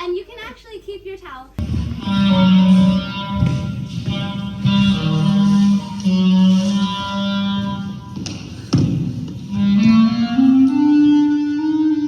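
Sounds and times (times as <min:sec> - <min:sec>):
sustained low note: 0:01.6 - 0:08.4
ringing guitar notes: 0:01.6 - 0:12.0.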